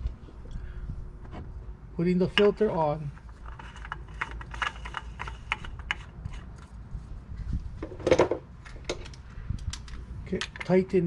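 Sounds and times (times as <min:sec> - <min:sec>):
metal scrape: 0:03.0 - 0:06.7.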